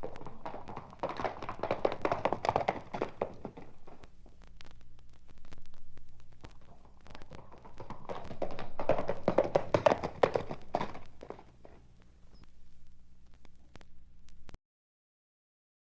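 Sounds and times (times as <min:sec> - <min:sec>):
rapid sharp taps and knocks: 0:00.0 - 0:04.2, 0:06.4 - 0:11.9.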